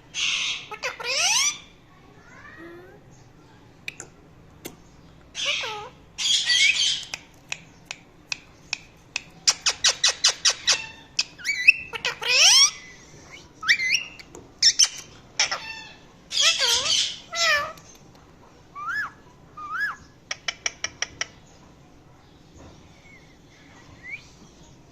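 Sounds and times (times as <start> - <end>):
parakeet squawking: 0.1 - 1.7, 5.3 - 7.1, 9.4 - 12.9, 13.6 - 17.8.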